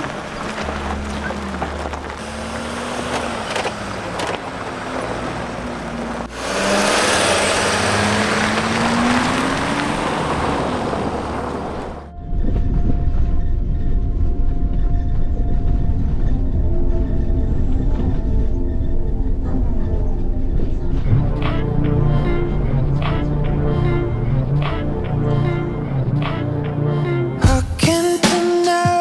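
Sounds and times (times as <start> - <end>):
tyre and road noise: 0.0 - 12.1, 20.8 - 28.2
van engine accelerating: 0.0 - 12.1, 17.5 - 27.8
deep engine rumble: 0.0 - 27.7.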